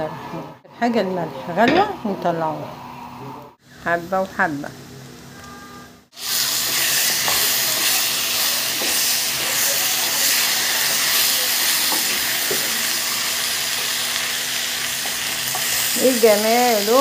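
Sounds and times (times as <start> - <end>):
food sizzling in hot fat: 6.1 - 17.0.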